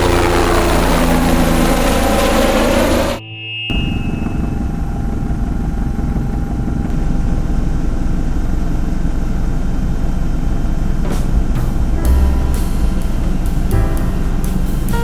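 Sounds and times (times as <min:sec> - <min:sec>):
helicopter engine and rotor drone: 0:00.0 - 0:03.2.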